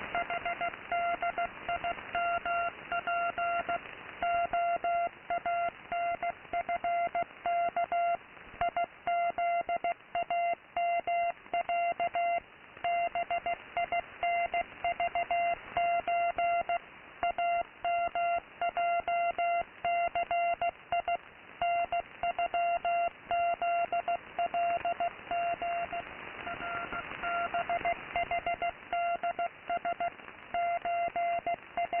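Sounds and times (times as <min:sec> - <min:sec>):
radio receiver hiss: 0:00.0 - 0:32.0
morse code tone: 0:21.6 - 0:32.0.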